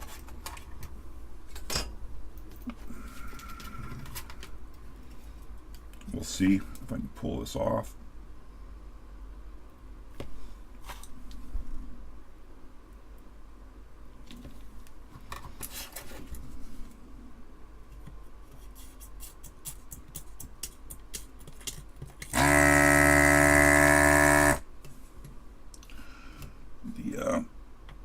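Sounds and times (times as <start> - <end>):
vacuum pump motor hum: 22.3 - 24.6.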